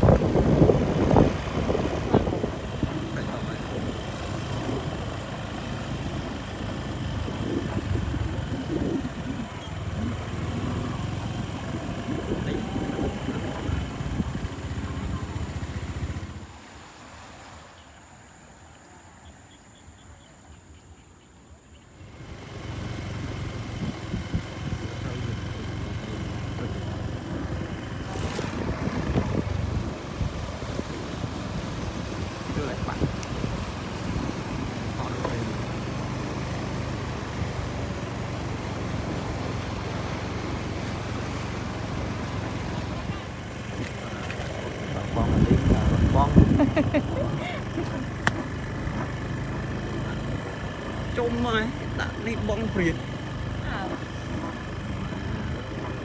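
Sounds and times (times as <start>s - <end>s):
wind noise on microphone: 0.0s - 16.5s, 22.9s - 49.7s
motor engine: 0.0s - 16.6s, 22.0s - 56.0s.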